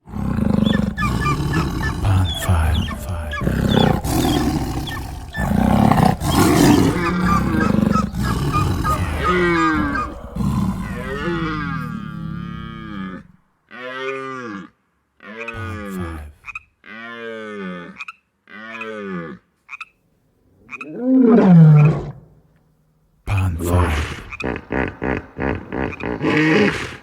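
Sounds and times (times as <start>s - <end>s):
big cat roaring and growling: 0.0s - 13.4s, 20.9s - 22.3s, 23.6s - 27.0s
wavering animal calls: 0.0s - 13.9s, 24.1s - 27.0s.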